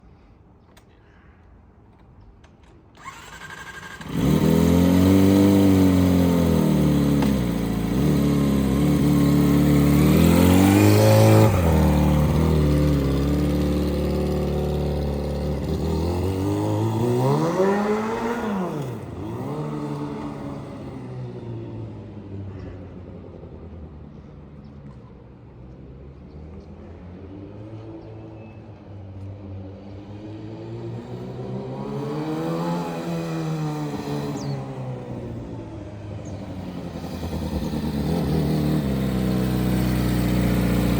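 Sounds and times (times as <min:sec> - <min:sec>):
loud engine exhaust revving: 0:04.0 - 0:19.8.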